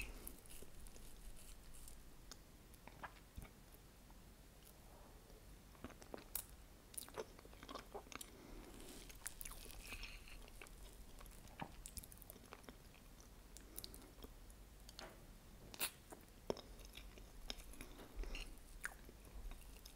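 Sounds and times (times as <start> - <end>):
wet chewing: 5.8 - 14.3.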